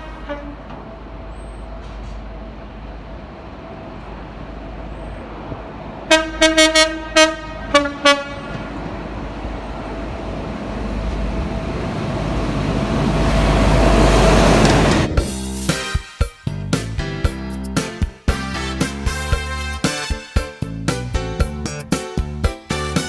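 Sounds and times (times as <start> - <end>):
train horn toots: 0.0 - 0.8, 6.1 - 8.9, 18.3 - 20.4
train rumble: 0.0 - 23.0.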